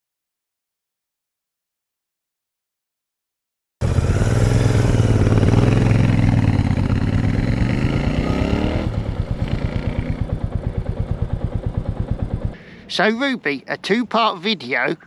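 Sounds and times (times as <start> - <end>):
motorcycle engine revving and idling: 3.8 - 12.6.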